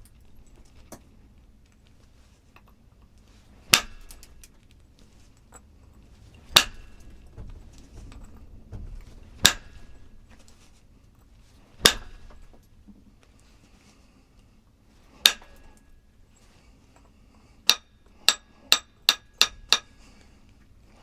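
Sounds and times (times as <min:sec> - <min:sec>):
sharp strikes on stone: 0:03.7 - 0:04.3, 0:06.5 - 0:07.1, 0:09.4 - 0:09.9, 0:11.8 - 0:12.3, 0:15.2 - 0:15.7.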